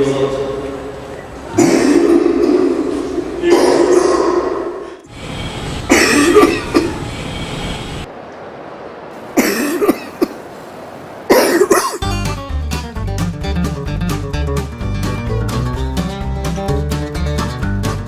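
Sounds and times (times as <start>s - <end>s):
harsh coughing over speaker: 1.5s - 2.8s, 3.4s - 4.5s, 5.9s - 7.0s, 9.4s - 10.4s, 11.3s - 12.0s.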